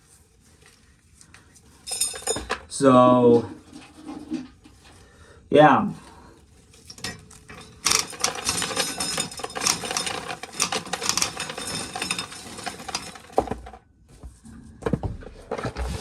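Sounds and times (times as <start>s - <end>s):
kernels clattering into a bucket: 1.7s - 4.6s, 6.8s - 13.8s
corn sheller running: 7.0s - 13.8s.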